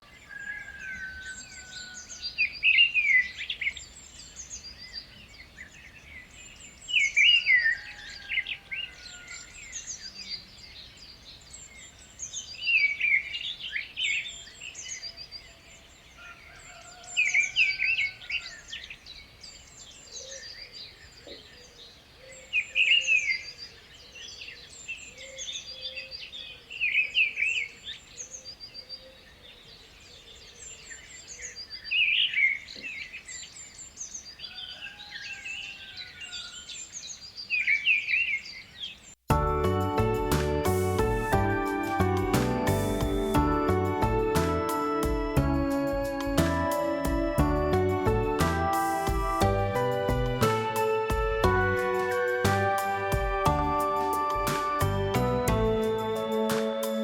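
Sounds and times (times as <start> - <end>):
bird chirping phrase: 37.6 - 57.0.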